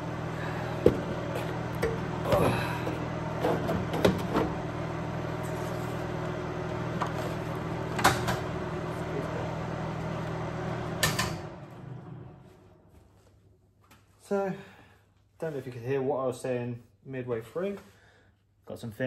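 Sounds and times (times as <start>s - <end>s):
welder electrical hum: 0.0s - 14.7s.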